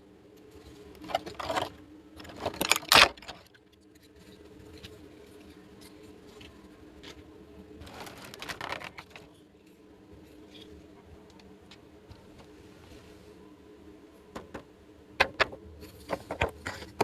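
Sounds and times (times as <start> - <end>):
faint steady hum: 0.0 - 17.0
rustling: 7.8 - 9.4.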